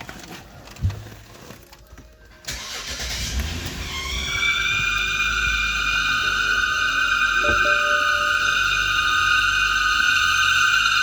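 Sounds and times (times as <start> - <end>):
car engine starting: 2.4 - 11.0
high-pitched whine: 6.3 - 11.0.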